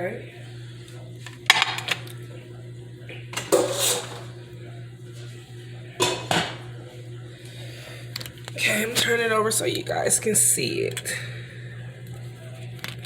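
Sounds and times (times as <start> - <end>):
spoon clinking and scraping on pot: 3.4 - 4.3.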